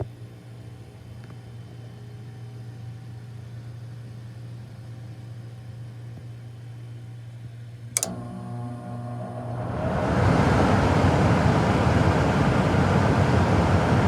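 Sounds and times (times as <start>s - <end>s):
air conditioning unit humming: 0.0s - 14.0s
sharp click: 8.0s - 8.4s.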